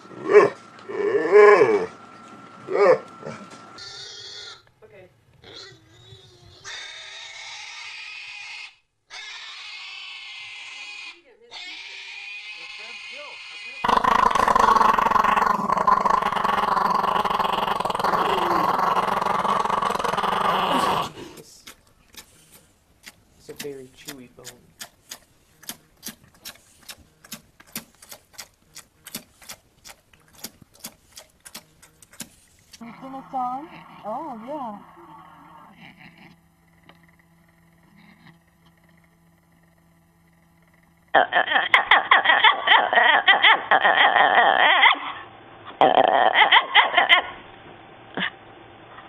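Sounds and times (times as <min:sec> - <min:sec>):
animal squeals: 0:02.7 - 0:04.7, 0:05.4 - 0:21.3, 0:32.8 - 0:36.4, 0:41.2 - 0:45.2, 0:45.8 - 0:47.3.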